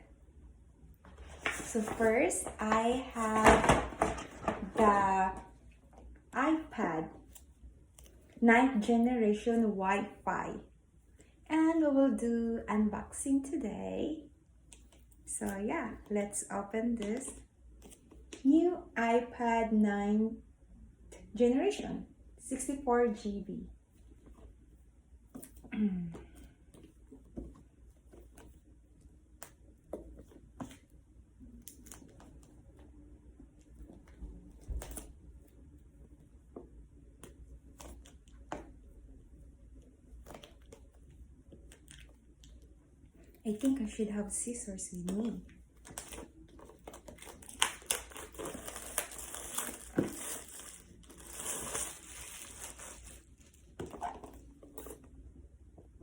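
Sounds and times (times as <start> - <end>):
hands handling packaging box: 1.1 - 5.0, 45.0 - 55.1.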